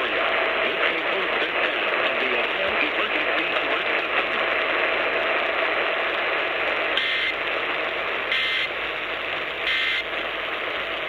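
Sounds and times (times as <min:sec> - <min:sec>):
radio hiss: 0:00.0 - 0:11.0
data tone squawks: 0:07.0 - 0:07.4, 0:08.3 - 0:08.7, 0:09.7 - 0:10.1.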